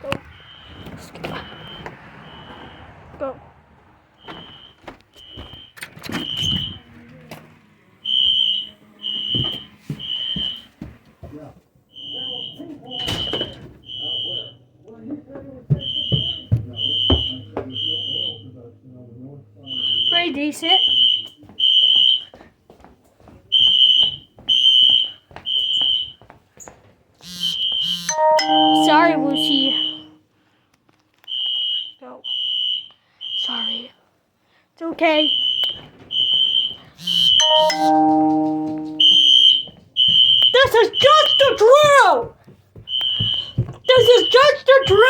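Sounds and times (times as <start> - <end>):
fire alarm horn blasts: 0.3 - 3.1, 4.2 - 6.9, 8.0 - 10.7, 11.9 - 14.7, 15.7 - 18.6, 19.6 - 22.3, 23.6 - 26.2, 27.2 - 30.2, 31.2 - 33.9, 35.1 - 42.0, 42.9 - 45.0.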